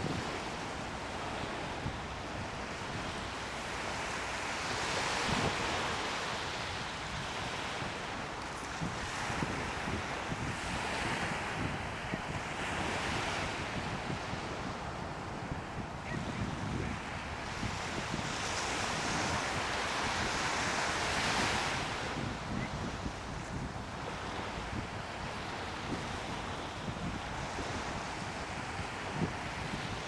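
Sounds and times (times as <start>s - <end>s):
wind buffeting microphone: 8.7s - 30.0s.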